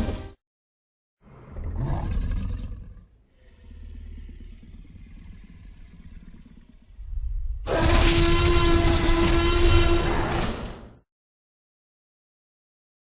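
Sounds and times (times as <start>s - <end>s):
dinosaur creature growling: 1.3s - 9.6s.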